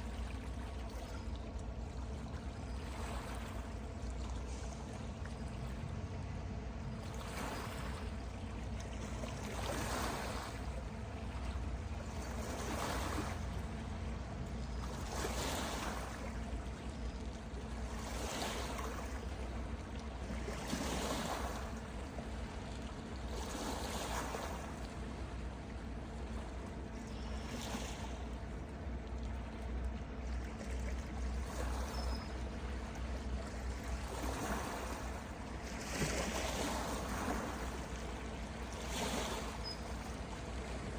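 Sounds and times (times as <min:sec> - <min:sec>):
water washing in surges: 0:33.1 - 0:40.9.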